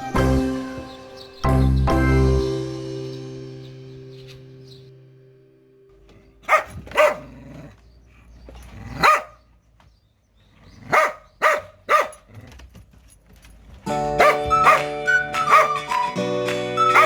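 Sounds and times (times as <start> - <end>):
background music: 0.0 - 5.9, 13.9 - 17.0
dog barking: 6.4 - 7.7, 8.8 - 9.4, 10.8 - 12.3, 14.2 - 15.9.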